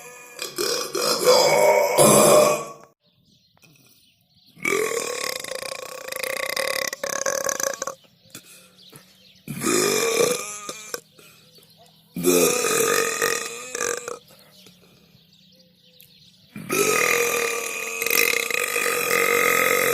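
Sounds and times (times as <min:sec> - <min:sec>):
person belching: 0:00.0 - 0:03.0, 0:04.6 - 0:08.5, 0:09.4 - 0:11.1, 0:12.2 - 0:14.3, 0:16.5 - 0:19.9.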